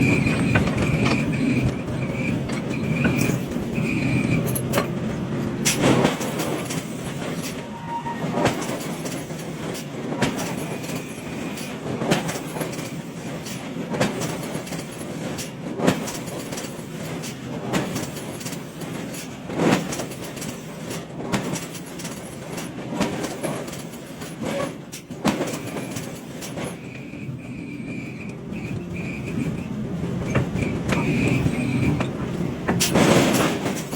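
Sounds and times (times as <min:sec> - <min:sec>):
hydraulic forging machinery running: 0:00.0 - 0:11.5, 0:25.4 - 0:33.9.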